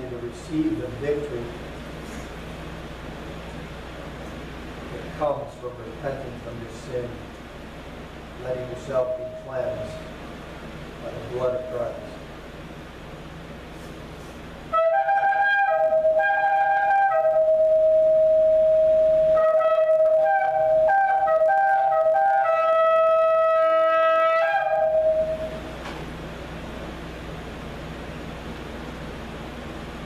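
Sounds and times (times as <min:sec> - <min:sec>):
shofar blast: 0:14.7 - 0:25.8.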